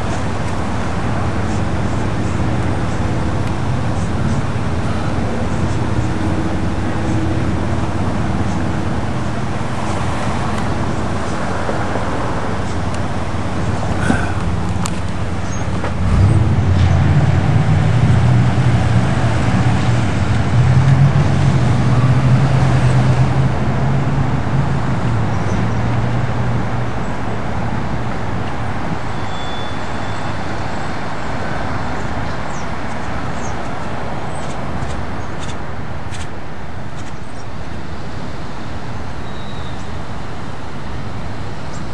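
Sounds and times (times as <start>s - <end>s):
car engine hum: 0.0s - 29.2s
road rumble: 0.0s - 41.9s.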